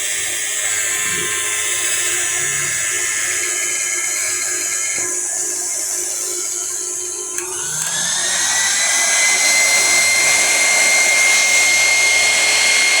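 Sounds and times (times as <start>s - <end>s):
stand mixer motor whine: 0.0s - 13.0s
click: 7.3s - 8.0s.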